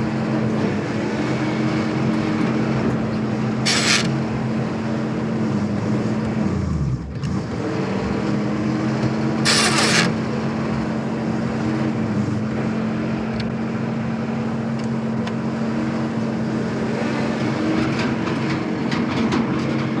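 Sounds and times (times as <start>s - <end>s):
truck engine running: 0.0s - 20.0s
short sharp hiss: 3.6s - 4.1s.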